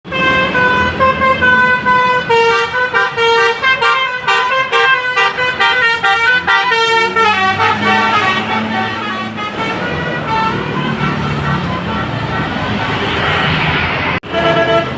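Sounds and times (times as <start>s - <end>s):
musical air horn melody: 0.1s - 12.7s, 14.2s - 14.9s.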